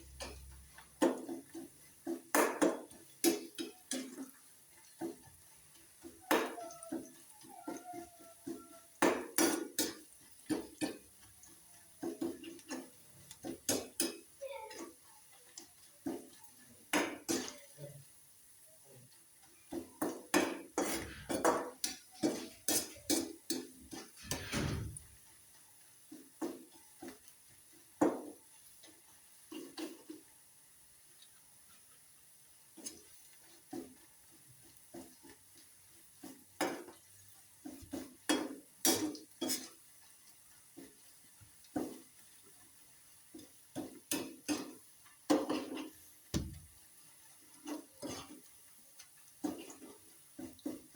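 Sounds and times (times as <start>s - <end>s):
utensils clinking on pots and dishes: 19.7s - 25.0s, 37.7s - 39.8s.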